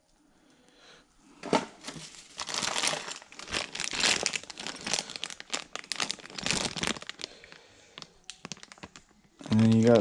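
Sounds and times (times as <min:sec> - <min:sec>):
plastic packaging crinkling: 0:01.8 - 0:10.0.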